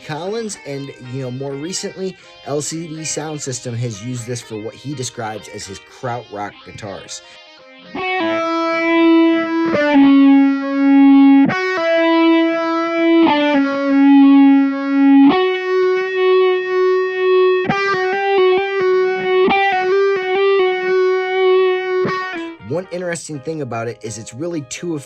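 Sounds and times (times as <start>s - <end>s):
distorted phased electric guitar: 4.6s - 24.2s.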